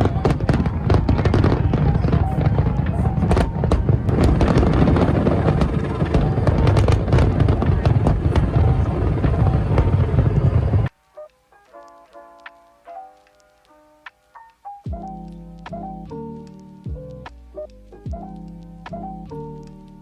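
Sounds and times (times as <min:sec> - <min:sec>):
fireworks booming and crackling: 0:00.0 - 0:11.0
soft music: 0:10.9 - 0:20.0.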